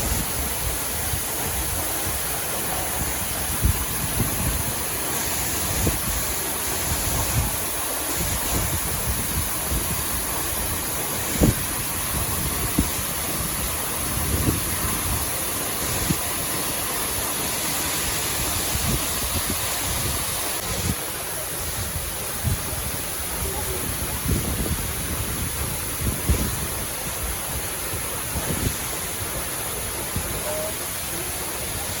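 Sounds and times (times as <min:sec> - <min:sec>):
waterfall rushing: 0:00.0 - 0:32.0
wind buffeting microphone: 0:03.0 - 0:16.6, 0:21.8 - 0:30.4.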